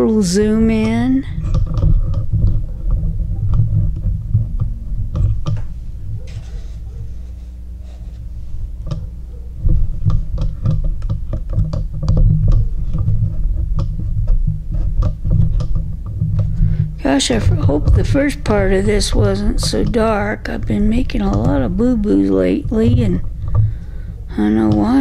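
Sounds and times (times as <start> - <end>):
steady low rumble: 0.0 - 25.0.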